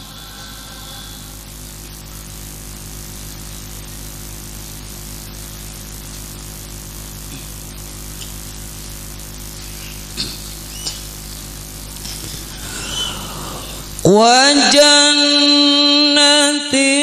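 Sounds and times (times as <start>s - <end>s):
person reciting phrases: 0.0s - 1.4s, 12.6s - 17.0s
sound system mains hum and hiss: 0.0s - 17.0s.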